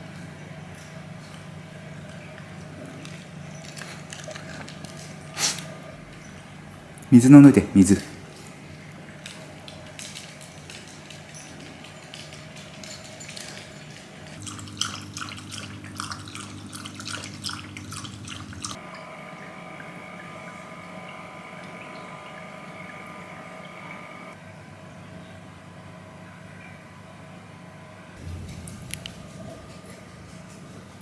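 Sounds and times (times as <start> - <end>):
dog lapping water: 0.0 - 18.9
steady hum: 14.2 - 24.8, 25.5 - 31.0.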